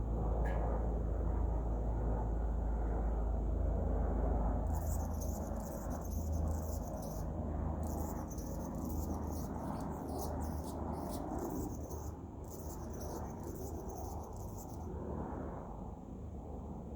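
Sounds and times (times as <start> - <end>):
steady low hum: 0.0 - 15.6
hummingbird chips and buzzes: 4.7 - 14.9.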